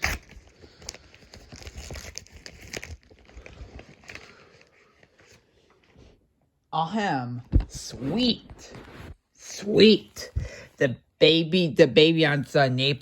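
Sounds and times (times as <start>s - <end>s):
packaging crinkling and tearing: 0.0s - 5.7s.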